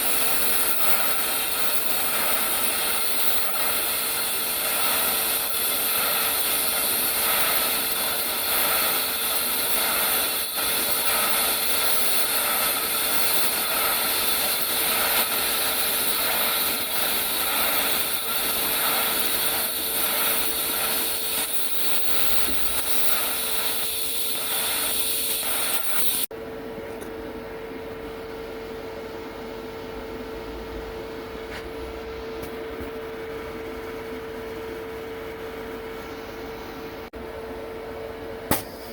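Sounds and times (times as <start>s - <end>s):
welding arc hiss: 0.0s - 26.3s, 38.5s - 38.9s.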